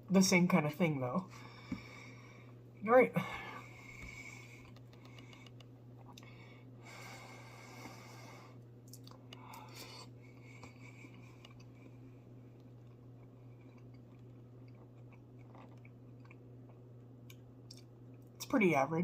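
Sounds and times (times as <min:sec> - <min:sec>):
steady low hum: 0:00.0 - 0:19.0
chewing: 0:03.8 - 0:06.4, 0:08.8 - 0:18.3.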